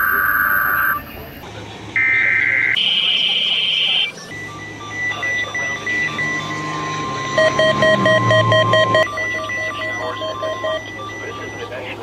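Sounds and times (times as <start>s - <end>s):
buzzing data-burst tone: 0.0s - 1.2s
rapid pulsing beeps: 0.0s - 1.4s, 2.0s - 12.0s.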